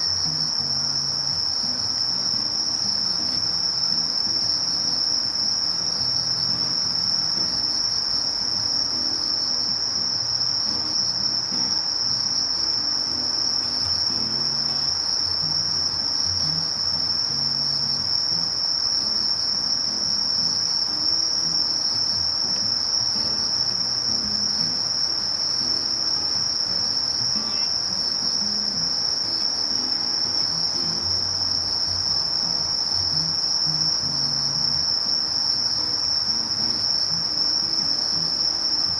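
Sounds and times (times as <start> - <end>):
katydid buzzing trill: 0.0 - 38.9.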